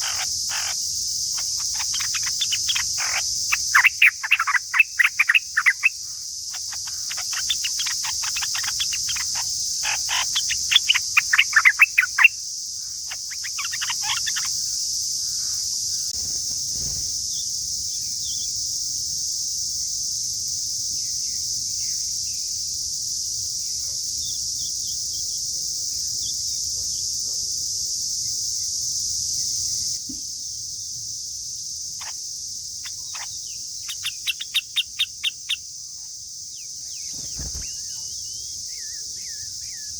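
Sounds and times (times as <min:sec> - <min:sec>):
bulbuls chirping: 0:00.0 - 0:17.4, 0:32.0 - 0:39.9
high-pitched insect chorus: 0:00.0 - 0:39.9.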